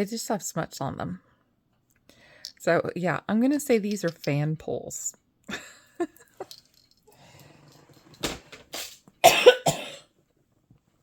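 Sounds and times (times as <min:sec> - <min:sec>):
woman coughing: 0:09.2 - 0:10.1.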